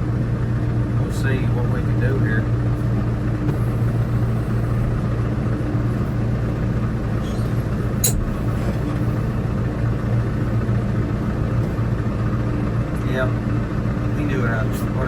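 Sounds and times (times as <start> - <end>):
tractor engine running: 0.0 - 15.0
sharp click: 8.0 - 8.4.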